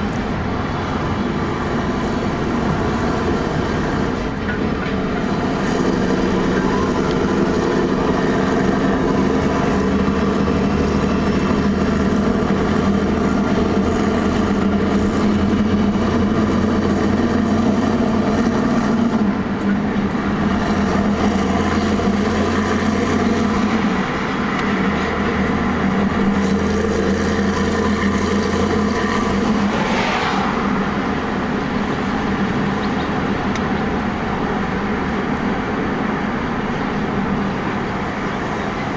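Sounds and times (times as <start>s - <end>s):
truck diesel engine running: 0.0s - 38.9s.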